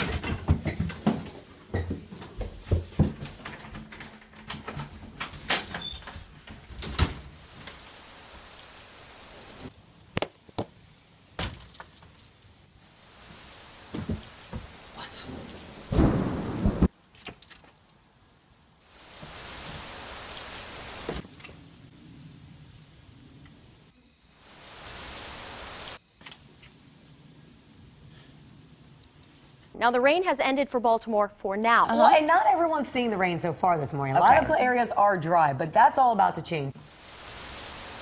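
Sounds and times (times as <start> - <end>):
rain falling: 5.6 - 9.8, 12.7 - 16.9, 18.8 - 21.9, 23.4 - 26.0, 36.7 - 38.0
thunder: 15.0 - 16.9.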